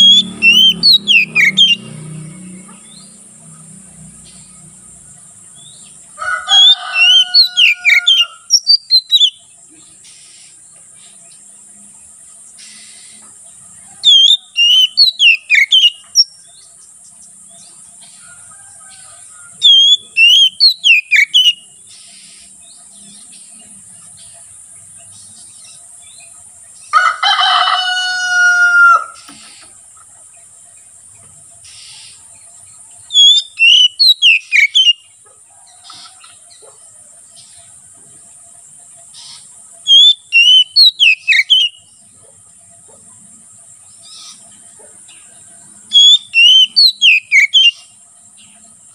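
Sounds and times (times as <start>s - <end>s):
bird whistling song: 0.0s - 2.1s, 6.6s - 9.5s, 14.0s - 16.6s, 19.6s - 22.4s, 33.0s - 35.1s, 39.2s - 41.9s, 45.9s - 47.9s
harsh drawn-out bird call: 0.0s - 4.6s, 5.6s - 9.4s, 13.8s - 16.4s, 18.2s - 22.6s, 26.9s - 29.8s, 33.1s - 35.1s, 39.1s - 41.9s, 45.8s - 48.0s.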